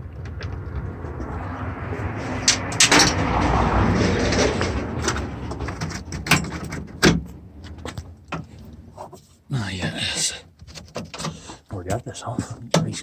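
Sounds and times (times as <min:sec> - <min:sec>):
scraping noise: 0:00.0 - 0:09.3
sharp knocks and clicks: 0:04.2 - 0:08.6.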